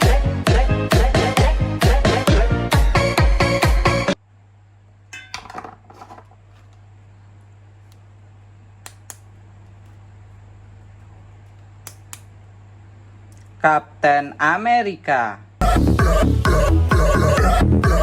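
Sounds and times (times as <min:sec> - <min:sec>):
low steady hum: 0:04.2 - 0:15.6.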